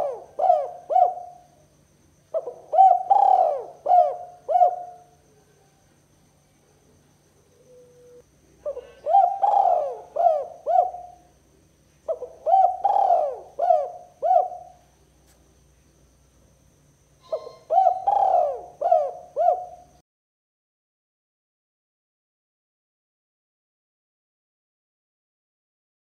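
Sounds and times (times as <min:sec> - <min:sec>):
dove cooing: 0:00.0 - 0:01.5, 0:02.3 - 0:05.8, 0:07.5 - 0:11.3, 0:12.1 - 0:14.9, 0:17.2 - 0:20.0.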